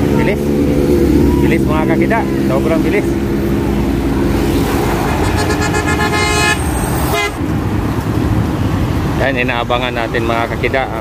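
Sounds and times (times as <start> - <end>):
vehicle horn: 5.0 - 7.4.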